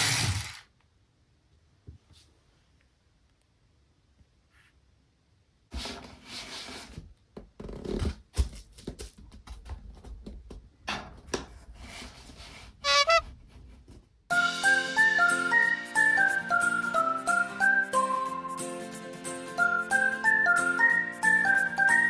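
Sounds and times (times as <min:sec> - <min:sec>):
toy cars rattling and clicking: 0:00.0 - 0:00.7
cheerful music: 0:14.3 - 0:22.0.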